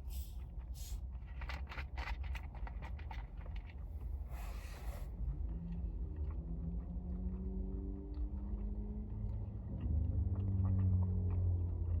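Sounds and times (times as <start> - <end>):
chewing noodles: 5.1 - 12.0.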